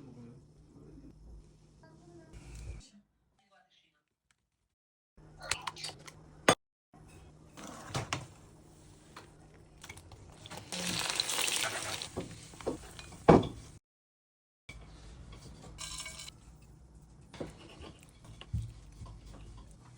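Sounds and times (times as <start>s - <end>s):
utensils clinking on dishes: 15.4s - 16.7s.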